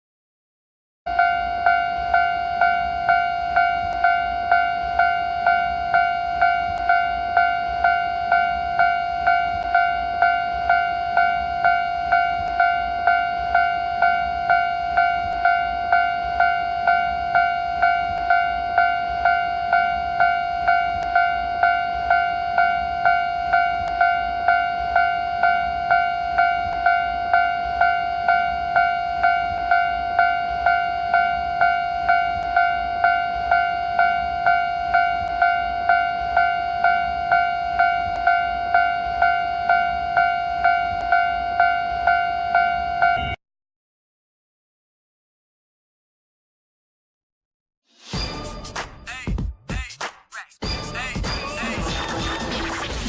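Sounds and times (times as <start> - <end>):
level-crossing warning bell ringing: 1.1 - 43.3.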